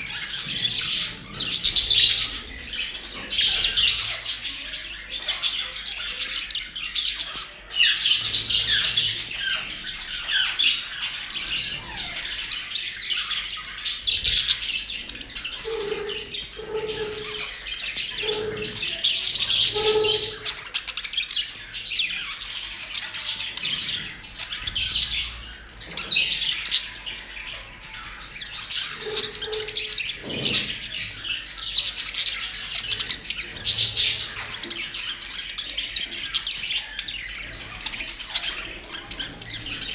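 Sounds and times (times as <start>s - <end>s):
low-pitched bird calls: 0.0s - 39.9s
parrots chirping and squawking: 0.0s - 39.9s.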